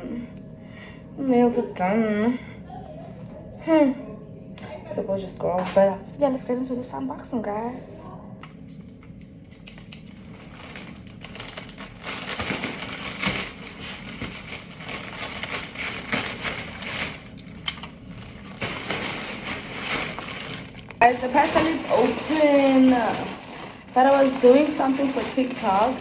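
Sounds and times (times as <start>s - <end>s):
packaging rustling and tearing: 9.6s - 26.0s.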